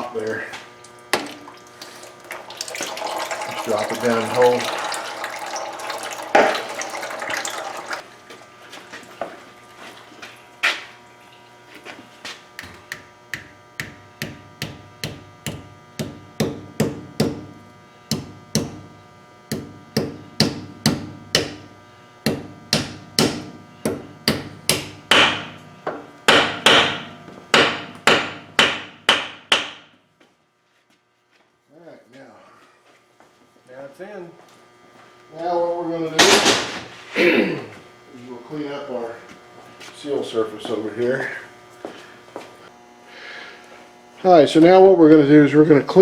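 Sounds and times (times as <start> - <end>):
hammer tapping metal: 12.6 - 29.9.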